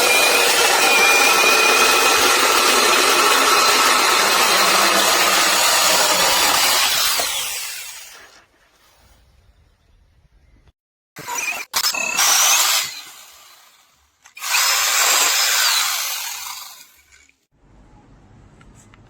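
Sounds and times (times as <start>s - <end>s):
mini chainsaw cutting wood: 0.0s - 8.3s, 11.2s - 17.2s.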